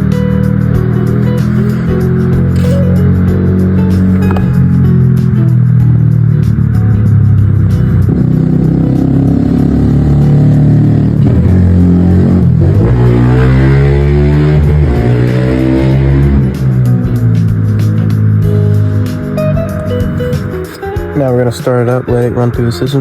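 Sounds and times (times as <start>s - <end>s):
music with heavy bass: 0.0s - 23.0s
gliding tones: 1.0s - 5.2s.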